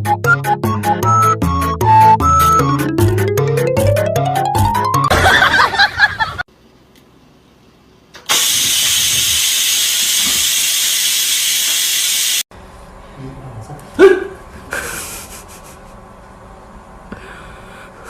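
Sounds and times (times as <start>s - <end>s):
loud steady hiss: 8.3s - 12.5s.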